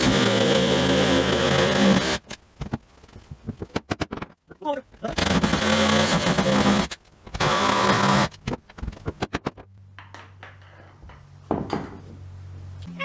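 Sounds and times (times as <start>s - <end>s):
power saw cutting wood: 0.0s - 2.4s, 5.1s - 8.4s.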